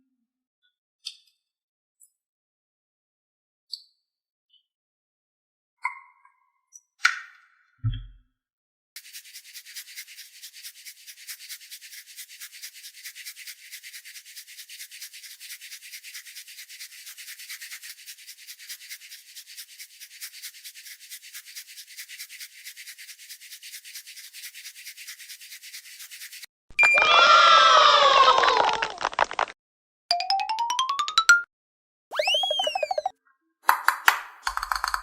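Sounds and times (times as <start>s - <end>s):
rapid scratching: 9.0s - 26.5s.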